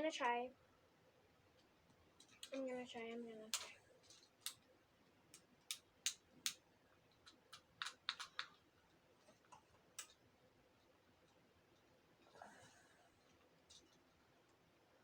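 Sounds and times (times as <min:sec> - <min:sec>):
fidget toys clicking and popping: 0:02.2 - 0:04.7, 0:05.3 - 0:08.7.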